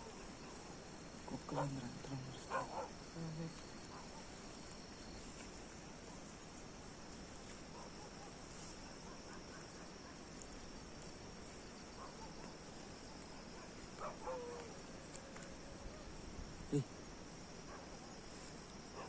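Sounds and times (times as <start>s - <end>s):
crickets trilling: 0.0s - 19.0s.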